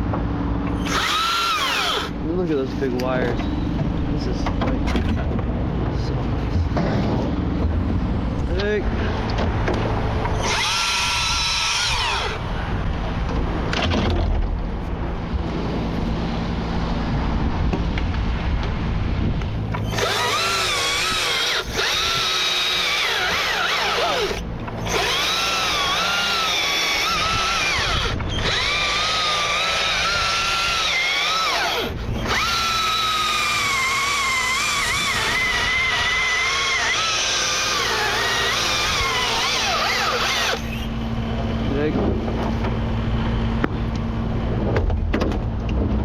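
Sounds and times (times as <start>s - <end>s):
electric chainsaw cutting: 0.8s - 2.2s, 10.3s - 12.5s, 19.8s - 40.9s.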